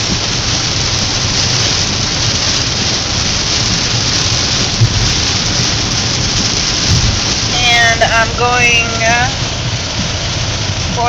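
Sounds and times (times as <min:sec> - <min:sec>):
car rumbling on wet road: 0:00.0 - 0:11.0
heavy rain on car: 0:00.0 - 0:11.0.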